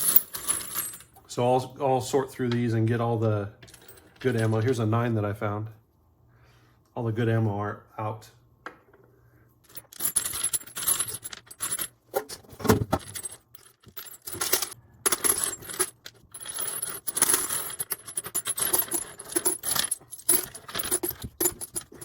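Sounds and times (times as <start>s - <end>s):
metal casings clinking and rattling: 0.0s - 1.2s, 3.6s - 4.8s, 9.6s - 12.0s, 13.0s - 22.0s.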